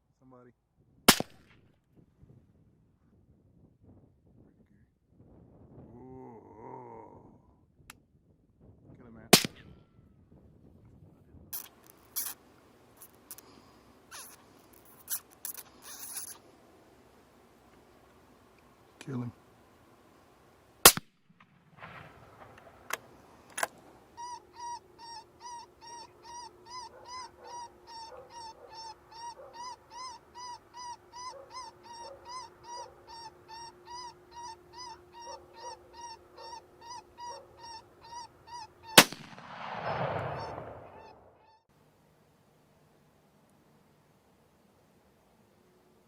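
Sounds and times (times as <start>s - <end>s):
rifle shots: 1.1s - 1.6s, 9.4s - 9.7s, 20.8s - 23.8s, 39.0s - 41.3s
faint steady hum: 11.4s - 39.8s, 41.7s - 46.0s.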